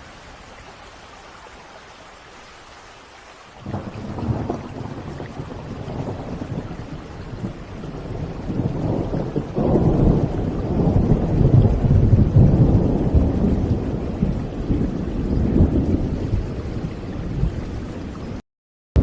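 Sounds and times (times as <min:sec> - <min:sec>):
rain hiss: 0:00.0 - 0:18.4
rolling thunder rumble: 0:03.6 - 0:18.4.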